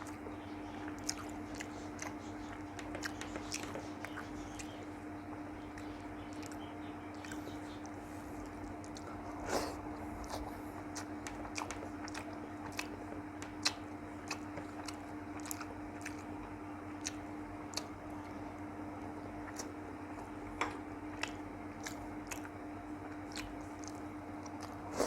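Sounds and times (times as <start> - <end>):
person chewing with mouth clicks: 0.0 - 5.0, 5.7 - 18.4, 19.0 - 25.0
low steady hum: 0.0 - 25.0.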